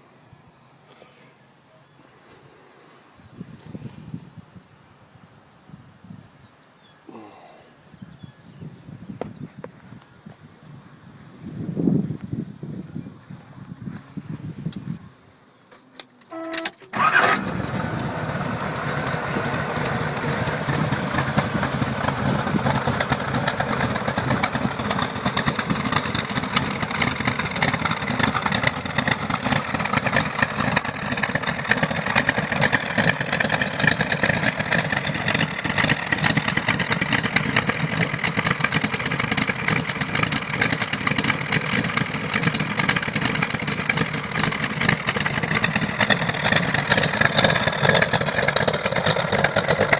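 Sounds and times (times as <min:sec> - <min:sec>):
car engine starting and idling: 0:15.8 - 0:49.9.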